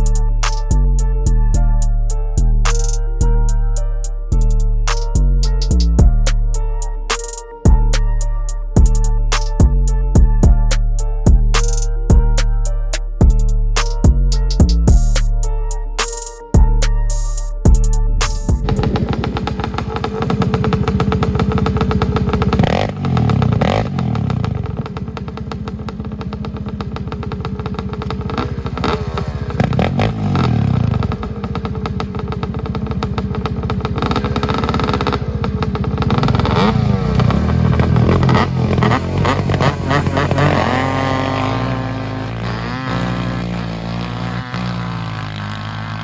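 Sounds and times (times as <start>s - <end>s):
atv engine revving: 18.6s - 46.0s.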